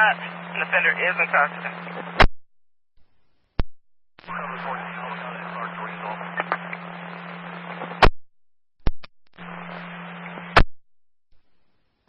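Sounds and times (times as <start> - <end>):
radio scanner hiss and hum: 0.0 - 2.3, 4.2 - 8.1, 8.8 - 10.7
radio squelch click: 6.2 - 6.8.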